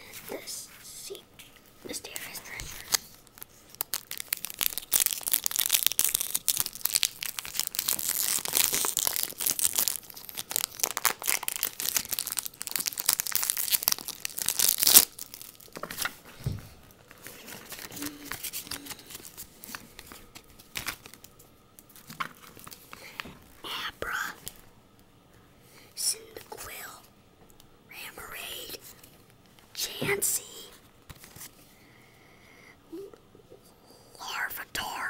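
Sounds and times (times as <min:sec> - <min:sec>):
foil wrapper tearing and crinkling: 0:02.6 - 0:16.2, 0:17.1 - 0:21.4
cards being handled: 0:15.8 - 0:21.1.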